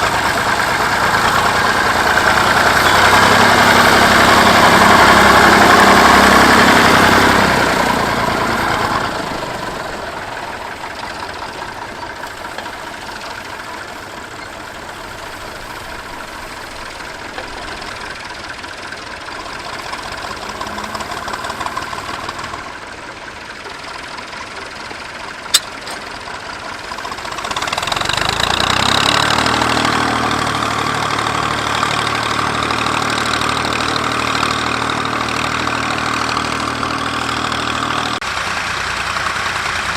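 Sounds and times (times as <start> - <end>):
tractor engine running: 0.0 - 39.9
sharp click: 25.5 - 26.0.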